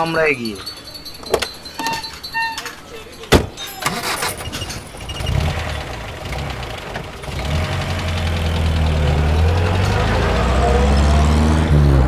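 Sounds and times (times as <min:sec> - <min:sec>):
vehicle engine droning: 0:03.4 - 0:12.0.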